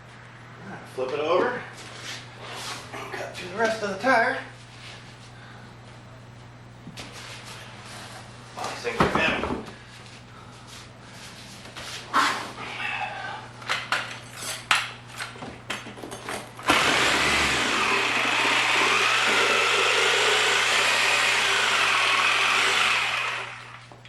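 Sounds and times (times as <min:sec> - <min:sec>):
power saw cutting through rubber: 0:16.6 - 0:23.8.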